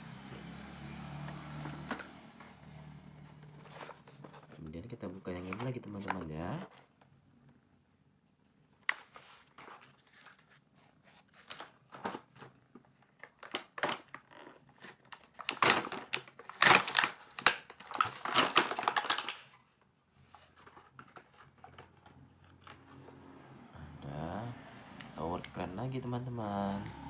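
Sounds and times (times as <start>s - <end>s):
plastic packaging crinkling: 13.2s - 19.8s.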